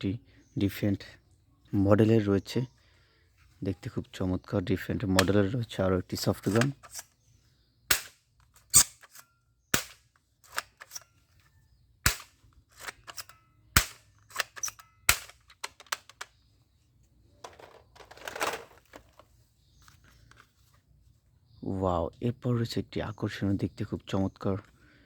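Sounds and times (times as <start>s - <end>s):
toy gun cocking clicks: 12.1s - 16.3s
rustling: 16.4s - 21.4s.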